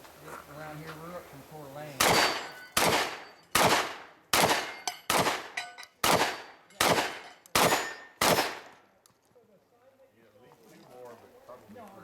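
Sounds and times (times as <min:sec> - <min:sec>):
shotgun shots: 0:02.0 - 0:08.8.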